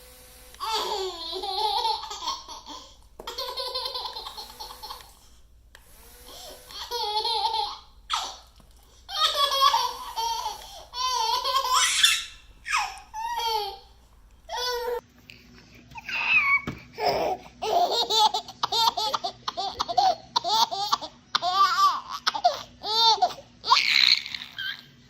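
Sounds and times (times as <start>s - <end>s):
baby laughing: 0.6s - 5.4s, 6.3s - 15.0s, 16.0s - 25.0s
baby breathing: 6.3s - 6.8s, 10.0s - 11.0s.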